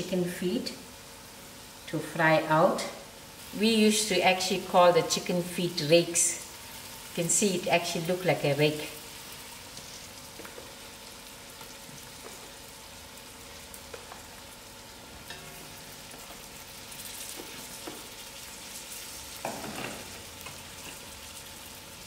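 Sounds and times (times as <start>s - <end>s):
food sizzling in oil: 0.0s - 22.0s.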